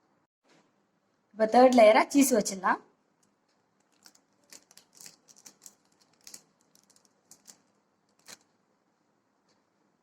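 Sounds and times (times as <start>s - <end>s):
faint crinkles of cheese wrapper: 3.2s - 8.6s.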